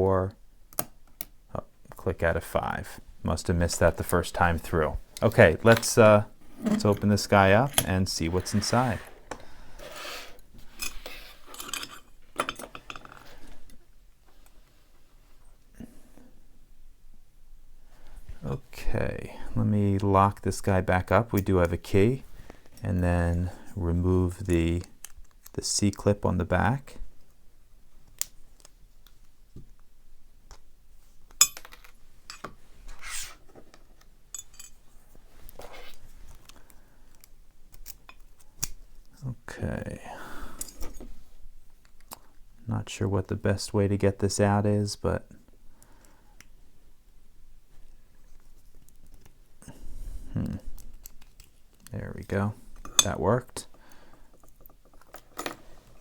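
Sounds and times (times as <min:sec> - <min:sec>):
metal tools clicking and scraping: 0:05.7 - 0:08.7, 0:10.7 - 0:13.3, 0:34.3 - 0:34.8
small metal tools clinking: 0:34.3 - 0:34.8.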